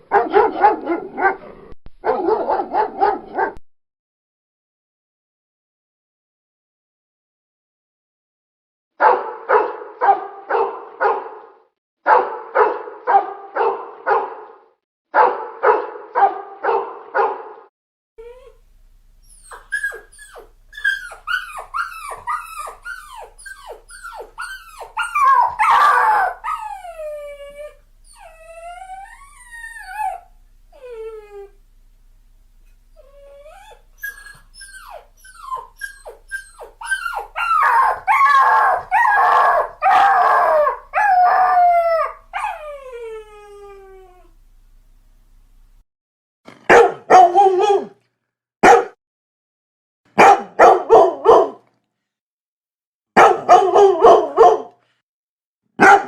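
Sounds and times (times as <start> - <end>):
dog barking: 0.0 - 3.6, 9.0 - 17.7, 24.4 - 26.6, 37.4 - 40.8, 46.7 - 48.0, 48.6 - 49.0, 50.2 - 51.7, 53.2 - 54.8, 55.8 - 56.0
dog yipping and whining: 18.2 - 18.6, 19.2 - 31.6, 32.9 - 44.3
dog howling: 19.3 - 31.6, 33.0 - 44.3, 47.1 - 48.0, 53.3 - 54.6.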